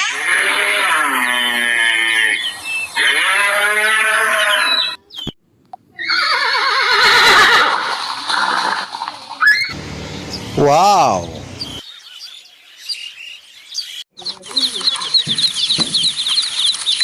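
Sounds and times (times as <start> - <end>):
farm animal calls: 0.0 - 5.0.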